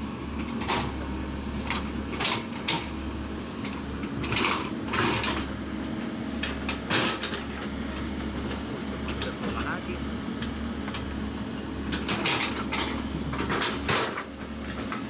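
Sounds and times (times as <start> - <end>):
diesel engine low hum: 0.0 - 15.0.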